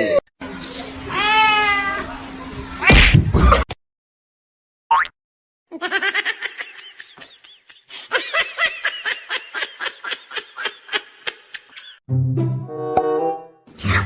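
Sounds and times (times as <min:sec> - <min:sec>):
person giggling: 0:05.8 - 0:12.0
music: 0:12.1 - 0:14.0.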